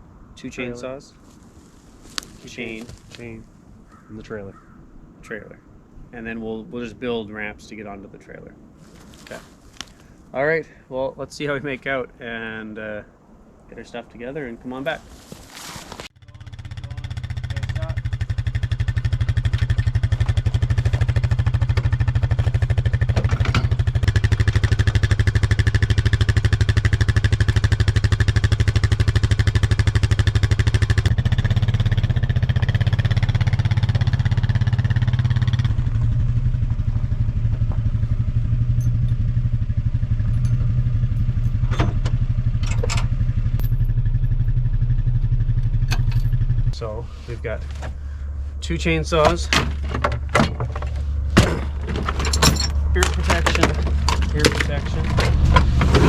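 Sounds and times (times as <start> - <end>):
atv engine running: 16.2 - 56.0.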